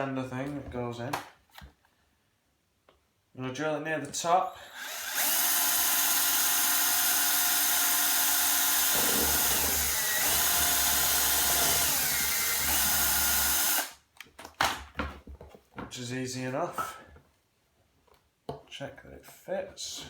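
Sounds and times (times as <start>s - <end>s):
electric drill boring plastic: 4.6s - 14.0s.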